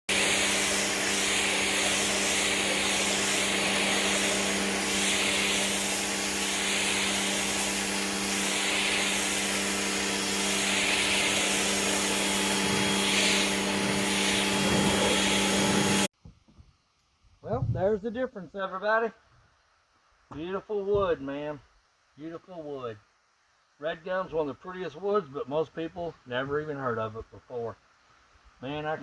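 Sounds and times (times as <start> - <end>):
pressure washer motor hum: 0.0 - 16.1
water jet hissing on wood: 0.1 - 16.1.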